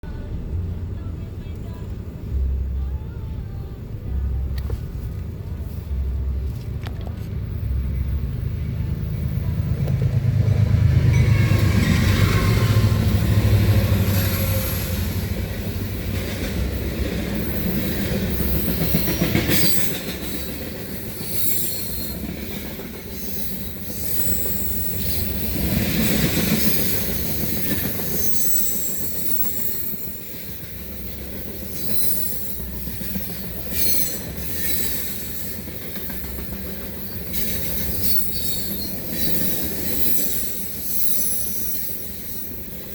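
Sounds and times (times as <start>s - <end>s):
freight train rumble: 0.0s - 42.9s
wheels clacking over rail joints: 6.6s - 42.9s
train wheels squealing: 11.0s - 15.8s, 17.4s - 42.9s.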